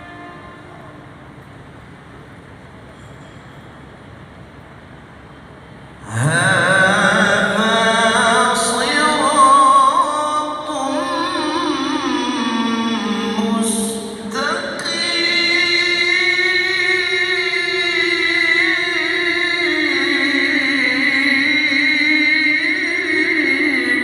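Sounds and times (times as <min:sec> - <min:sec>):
man reciting melodically: 0:06.0 - 0:24.0.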